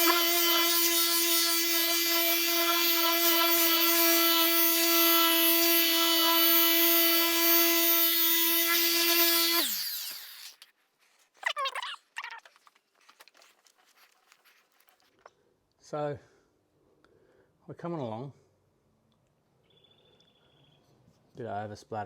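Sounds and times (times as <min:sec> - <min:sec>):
electric polisher whining: 0:00.0 - 0:10.5.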